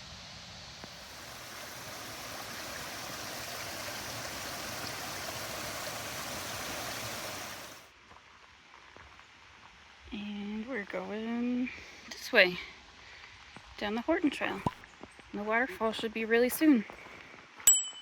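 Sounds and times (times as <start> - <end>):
creek water rushing over rocks: 0.8 - 7.9.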